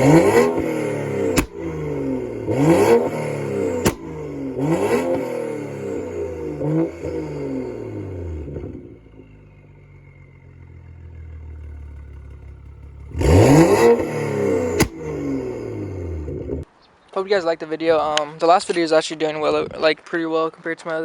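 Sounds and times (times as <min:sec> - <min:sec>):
exhaust bang: 0:00.0 - 0:16.6
car engine revving: 0:00.0 - 0:16.7.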